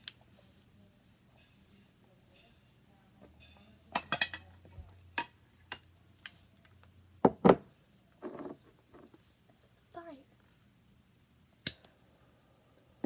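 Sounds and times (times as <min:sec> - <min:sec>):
rasping lighter strike: 0:11.6 - 0:11.9.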